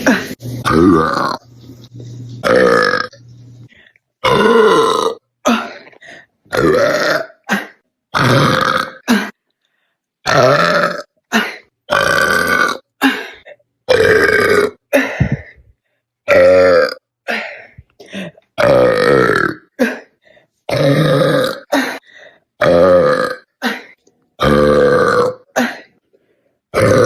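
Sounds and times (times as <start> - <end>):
woman belching: 0.0 - 1.4, 2.4 - 3.2, 4.2 - 9.4, 10.3 - 13.2, 13.9 - 15.5, 16.3 - 17.1, 18.6 - 20.1, 20.7 - 21.9, 22.6 - 25.8, 26.7 - 27.0.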